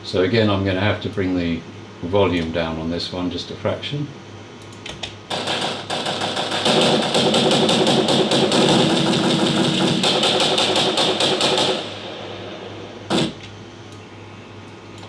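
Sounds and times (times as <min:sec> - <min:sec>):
mechanical clatter of rapid knocks: 0:04.9 - 0:12.0, 0:13.1 - 0:13.5
steady running machine sound: 0:05.3 - 0:15.0.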